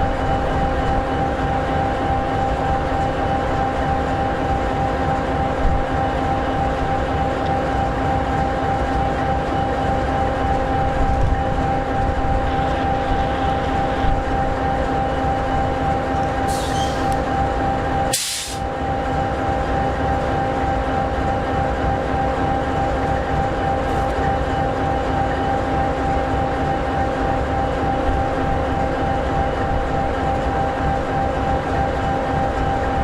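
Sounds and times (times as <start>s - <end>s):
diesel locomotive idling: 0.0s - 33.0s
air hiss bursts: 16.5s - 17.2s, 18.1s - 18.6s.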